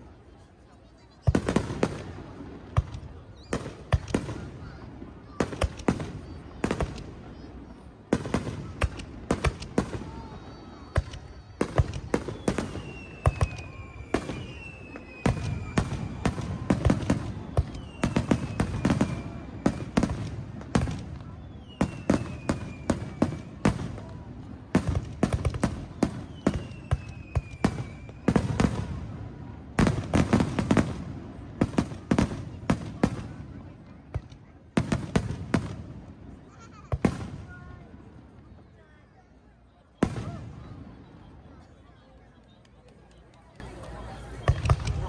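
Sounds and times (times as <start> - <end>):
fireworks bursting with bangs: 1.1 - 38.5, 40.0 - 41.7, 43.6 - 45.0
high falling firework whistles: 10.0 - 20.0, 21.2 - 23.6, 26.0 - 28.8.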